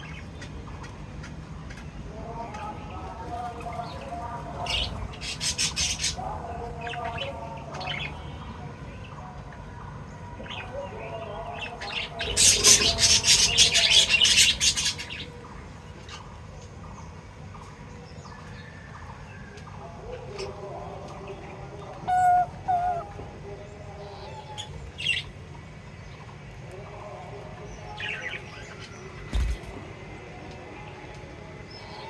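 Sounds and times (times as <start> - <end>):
parrots chirping shrilly: 12.2 - 15.2.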